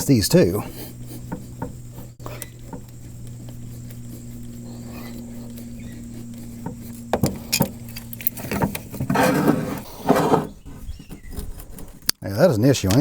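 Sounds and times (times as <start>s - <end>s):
steady low hum: 0.0s - 12.8s
tools clinking on metal: 7.2s - 8.7s.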